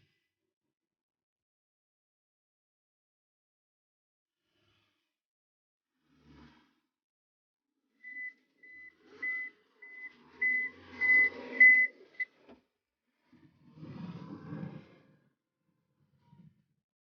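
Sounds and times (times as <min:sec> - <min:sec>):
reversing alarm beeping: 0:08.0 - 0:12.3.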